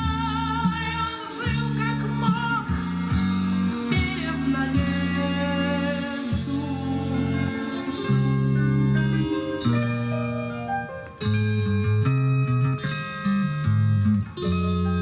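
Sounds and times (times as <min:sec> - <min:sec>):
rock music with singer: 0:00.0 - 0:10.4.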